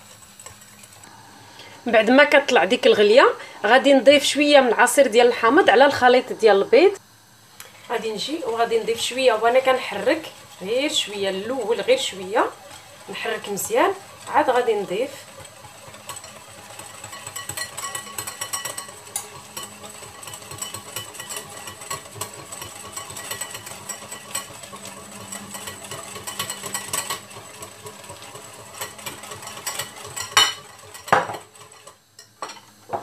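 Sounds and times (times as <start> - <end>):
mixture stirred briskly in bowl: 0.0 - 1.1, 7.7 - 32.5.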